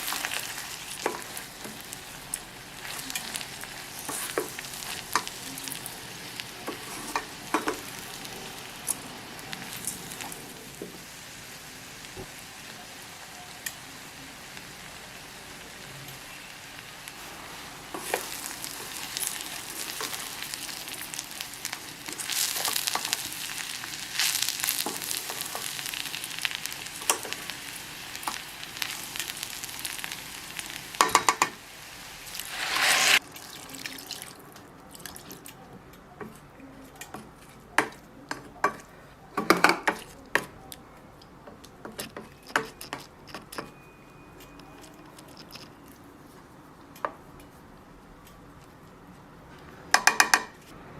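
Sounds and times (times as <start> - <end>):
food sizzling in hot oil: 0.0 - 34.3.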